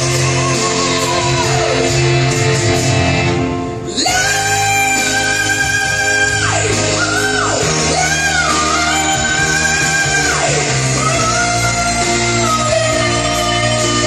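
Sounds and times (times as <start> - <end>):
electric guitar and band: 0.0 - 14.0.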